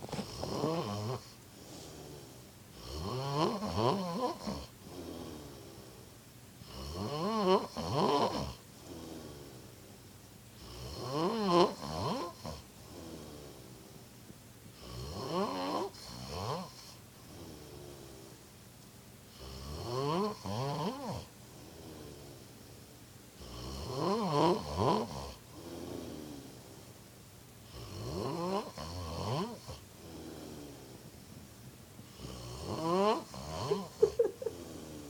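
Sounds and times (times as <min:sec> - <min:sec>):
quiet breaths: 0:00.0 - 0:35.0
man snoring loudly: 0:00.2 - 0:01.3, 0:02.8 - 0:05.8, 0:06.6 - 0:09.6, 0:10.6 - 0:13.6, 0:14.8 - 0:18.1, 0:19.4 - 0:22.3, 0:23.4 - 0:26.6, 0:27.7 - 0:31.0, 0:32.2 - 0:35.0.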